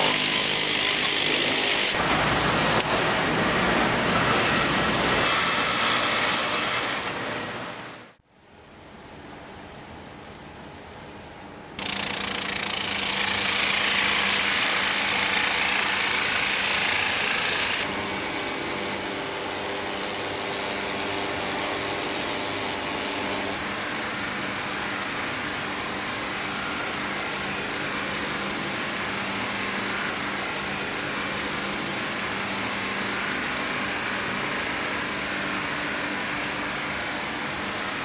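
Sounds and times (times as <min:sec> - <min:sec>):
machine cutting wood: 0:00.0 - 0:08.2, 0:11.8 - 0:23.6.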